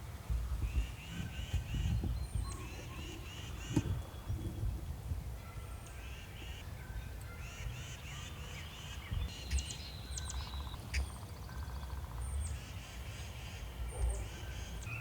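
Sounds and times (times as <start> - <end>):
songbirds singing and chirping: 0.5 - 15.0.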